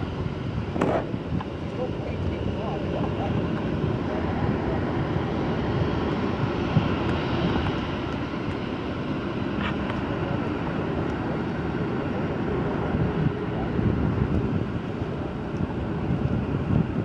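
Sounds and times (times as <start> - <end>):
jet engines roaring: 0.0 - 17.0.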